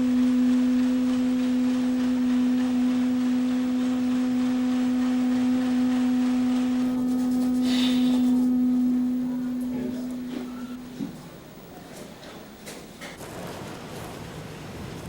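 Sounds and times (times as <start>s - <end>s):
ocarina holding low note: 4.8s - 11.1s.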